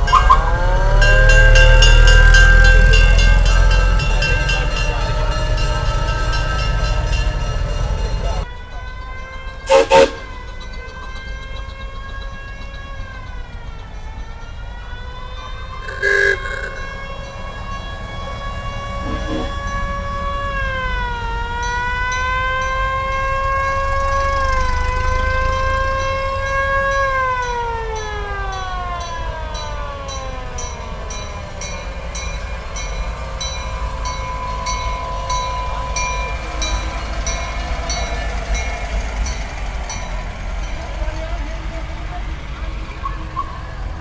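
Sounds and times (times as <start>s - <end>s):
low engine rumble: 0.0s - 20.6s
siren wailing: 0.0s - 40.4s.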